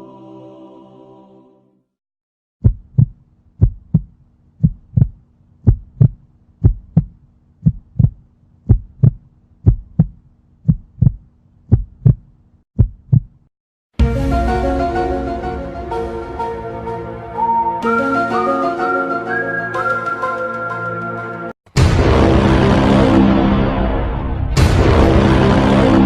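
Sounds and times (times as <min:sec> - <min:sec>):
heartbeat thumps: 0:02.6 - 0:13.4.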